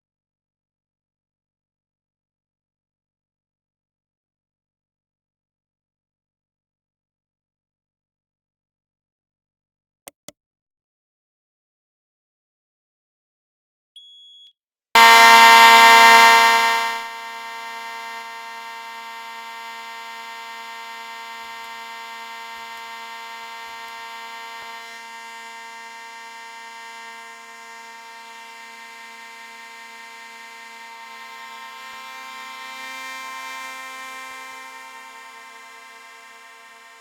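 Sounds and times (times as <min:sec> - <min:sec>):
short high beep: 0:14.0 - 0:16.4
fire alarm tone: 0:14.0 - 0:37.0.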